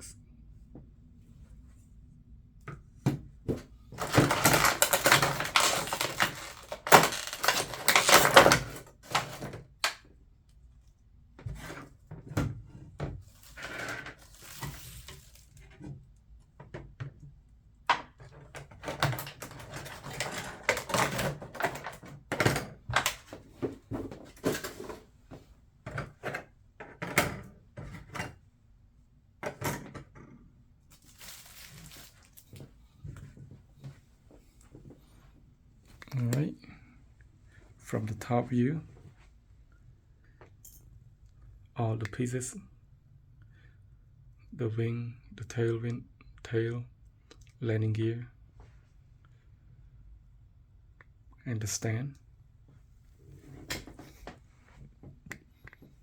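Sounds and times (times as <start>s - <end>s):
packaging rustling: 4.0s - 9.5s, 13.4s - 15.6s, 30.9s - 32.7s
packaging clicks and knocks: 4.0s - 10.0s, 18.8s - 25.0s.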